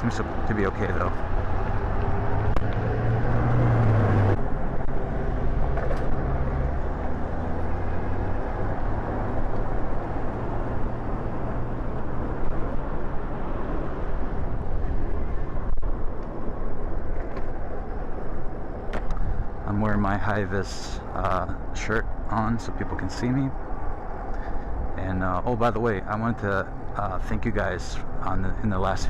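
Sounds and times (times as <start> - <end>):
road and wind noise: 0.0 - 29.0.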